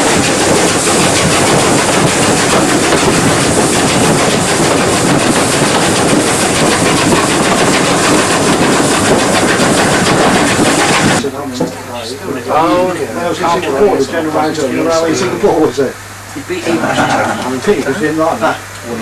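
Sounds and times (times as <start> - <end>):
train wheels on rails: 0.0 - 11.2.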